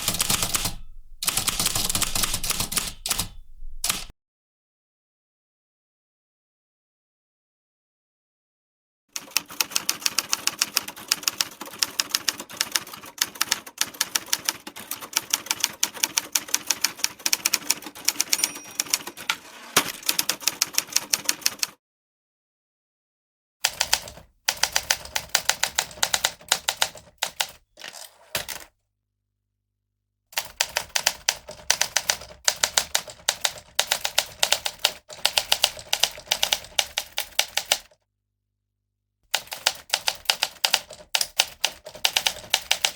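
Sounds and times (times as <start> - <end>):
typewriter keys clacking: 0.0 - 4.1, 9.2 - 21.7, 23.7 - 28.7, 30.4 - 37.9, 39.4 - 42.9.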